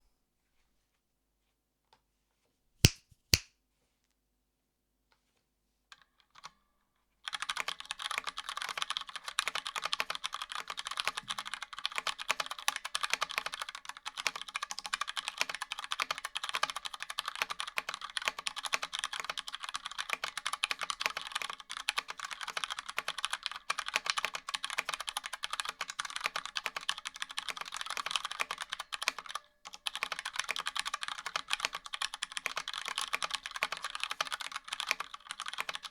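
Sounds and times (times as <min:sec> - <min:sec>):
mechanical keyboard typing: 0:07.3 - 0:35.9.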